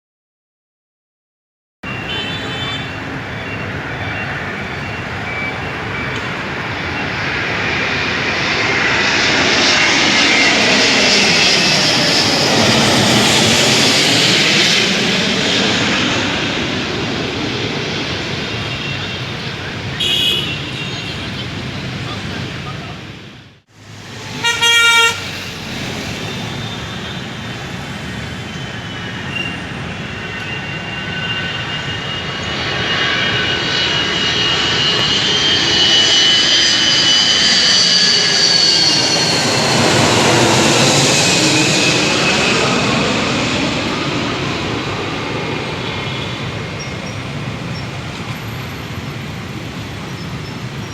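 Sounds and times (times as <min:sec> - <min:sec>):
jet airliner roaring past: 0:01.8 - 0:50.9
horn-like toot: 0:20.0 - 0:21.2, 0:24.3 - 0:25.4.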